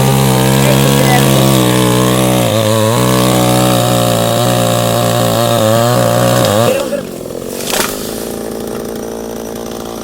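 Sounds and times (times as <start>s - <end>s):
chainsaw running: 0.0s - 10.0s
sharp crack: 7.5s - 8.8s.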